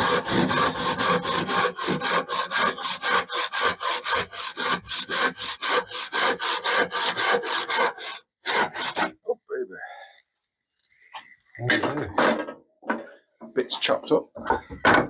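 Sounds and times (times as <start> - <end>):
hand saw cutting timber: 0.0 - 9.2.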